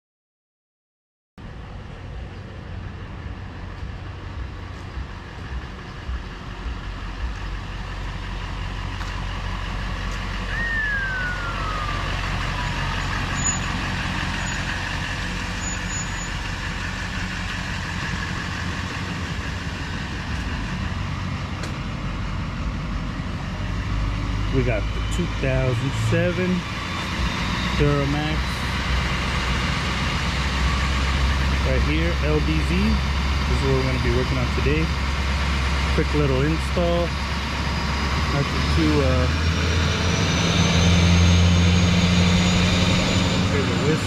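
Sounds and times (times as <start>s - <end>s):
diesel engine idling: 1.4s - 44.0s
whistle falling in pitch: 10.5s - 13.7s.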